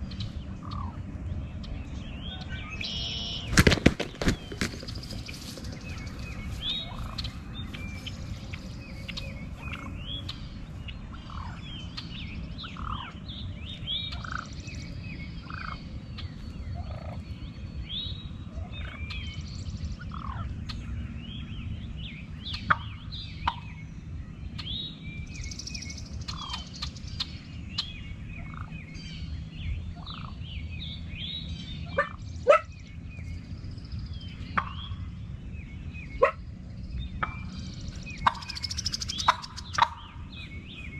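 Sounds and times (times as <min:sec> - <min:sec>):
songbird chirps: 0:00.0 - 0:40.9
steady low background noise: 0:00.0 - 0:40.9
wild turkeys gobbling: 0:38.2 - 0:40.2.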